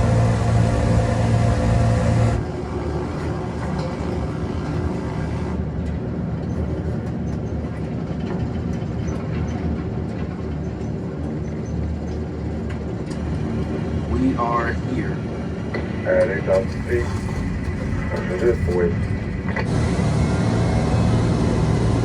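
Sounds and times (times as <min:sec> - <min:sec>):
bomber engines droning: 0:00.0 - 0:22.0.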